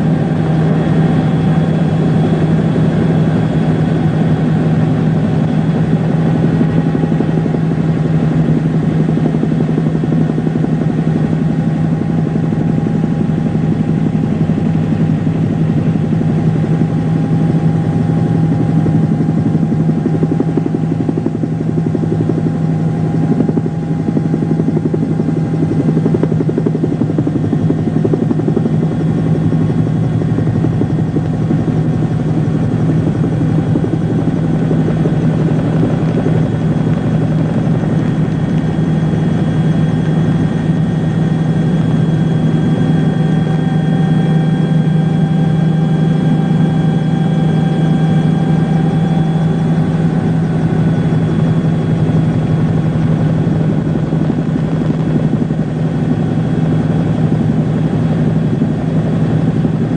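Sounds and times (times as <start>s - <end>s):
loud mechanical engine drone: 0.0s - 59.9s.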